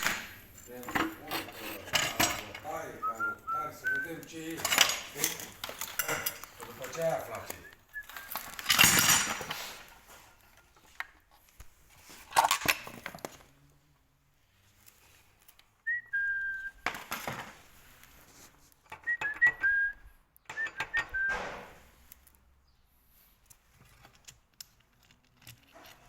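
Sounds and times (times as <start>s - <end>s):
clattering noise: 0.0s - 11.1s, 16.7s - 18.0s, 18.8s - 19.9s, 20.5s - 21.9s
high whistle-like chirps: 20.6s - 21.4s.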